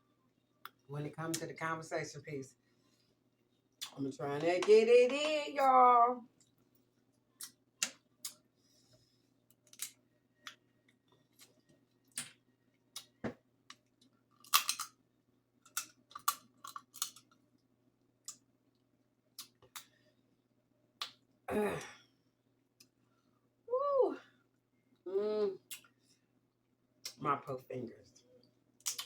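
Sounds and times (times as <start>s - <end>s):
crab shells cracking: 9.6s - 10.0s, 12.9s - 15.0s, 15.6s - 17.4s.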